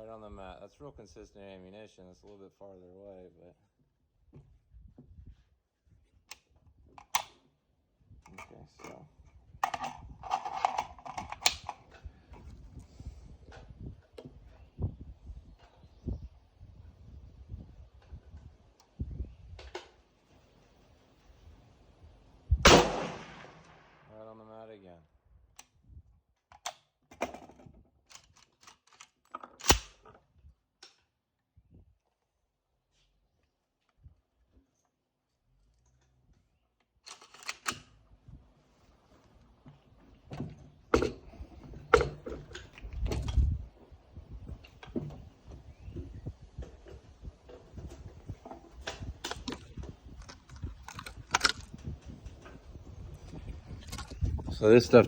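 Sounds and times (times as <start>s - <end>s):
clicks and knocks of rifle gear: 4.4s - 7.6s, 8.2s - 14.7s, 25.6s - 31.2s, 32.0s - 54.5s
rifle handling clicks: 7.0s - 7.4s, 9.6s - 11.8s, 28.1s - 30.1s, 37.0s - 37.9s, 48.8s - 52.6s
loud rifle shot: 22.6s - 24.1s.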